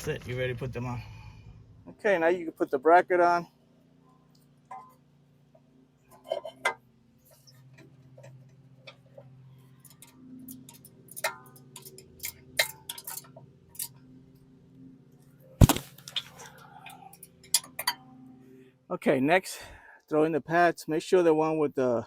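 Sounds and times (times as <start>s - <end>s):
steady low hum: 0.0s - 2.9s
metal clicks and clinks: 9.8s - 14.0s, 16.1s - 18.0s.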